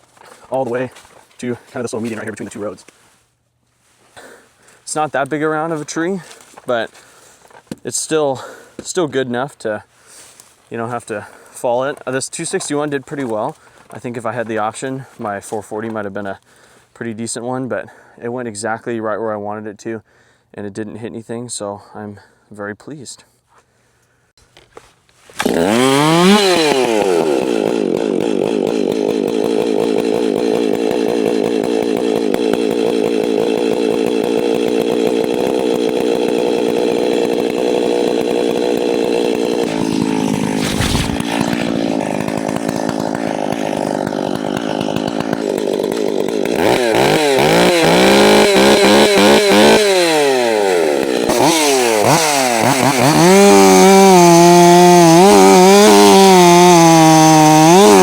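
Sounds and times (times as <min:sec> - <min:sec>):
chainsaw revving: 0:11.1 - 0:14.0, 0:25.4 - 0:58.0.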